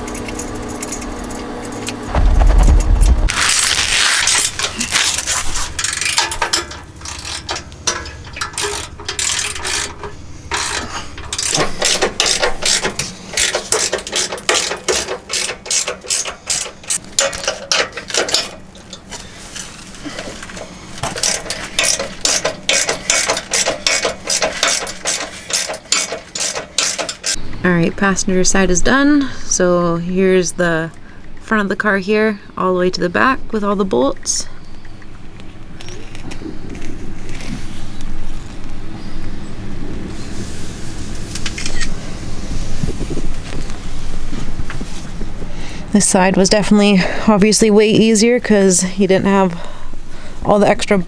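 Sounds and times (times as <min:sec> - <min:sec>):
low thud: 0:02.1 - 0:04.2
ratchet wrench clicking: 0:05.8 - 0:17.0, 0:21.2 - 0:27.4.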